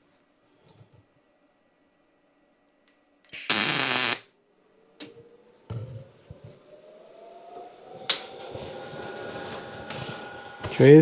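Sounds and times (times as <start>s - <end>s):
welder arc burst: 3.4s - 4.2s
faint rising tone: 4.6s - 11.0s.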